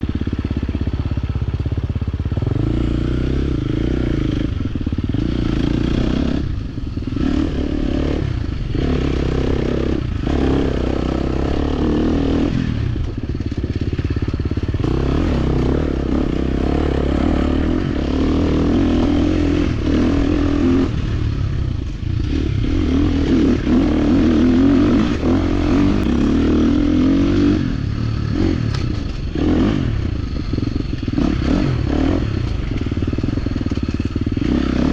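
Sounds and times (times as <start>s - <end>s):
dirt bike engine under load: 23.0s - 26.7s.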